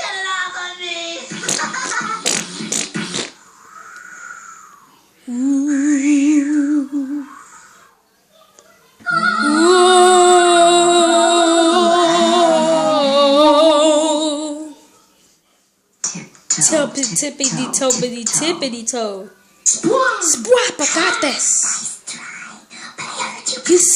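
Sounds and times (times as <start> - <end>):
singing with vibrato: 4.1 - 7.9, 9.1 - 14.8.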